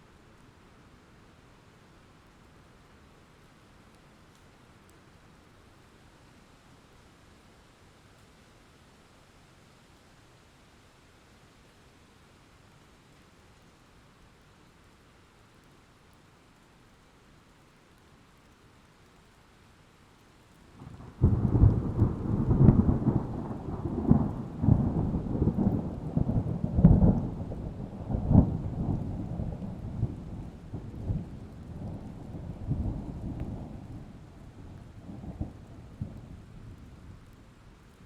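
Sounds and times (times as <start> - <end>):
thunder rumbling and cracking: 20.8 - 37.3.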